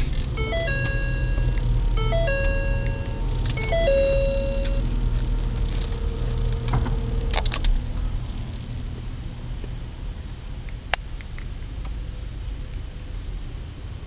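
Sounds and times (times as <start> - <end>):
car engine idling: 0.0 - 14.0
electronic alarm beeping melody: 0.4 - 5.0.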